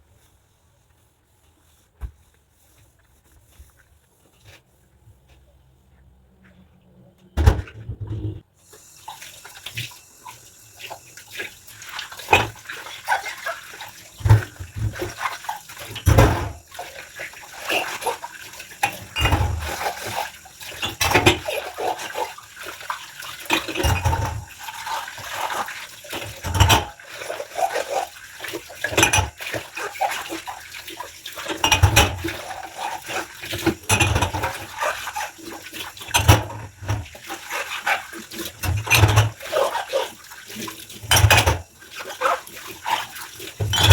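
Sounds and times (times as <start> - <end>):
water splashing: 8.8 - 43.9
rubber gloves squeaking on dishes: 31.6 - 43.9.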